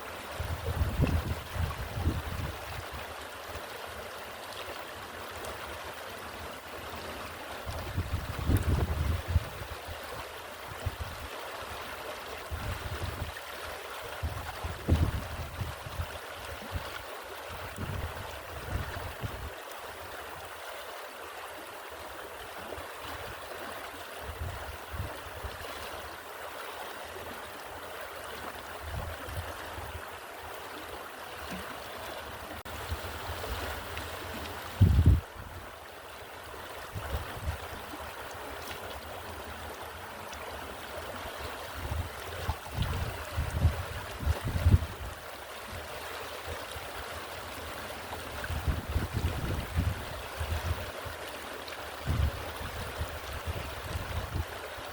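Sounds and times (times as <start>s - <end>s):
stream water flowing: 0.0s - 54.9s
wind on microphone: 0.4s - 3.0s, 7.7s - 9.8s, 12.5s - 13.4s, 14.2s - 19.6s, 24.2s - 25.7s, 28.8s - 30.0s, 34.7s - 35.7s, 36.9s - 37.8s, 41.7s - 45.3s, 48.2s - 50.9s, 52.0s - 54.6s.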